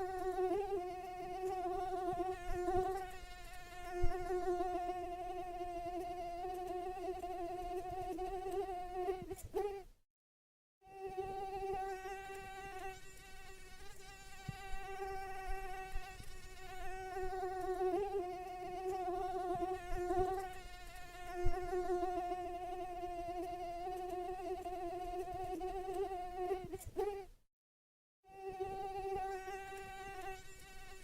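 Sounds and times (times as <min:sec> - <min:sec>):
mosquito buzzing: 0:00.0 - 0:09.9, 0:10.8 - 0:27.4, 0:28.2 - 0:31.0.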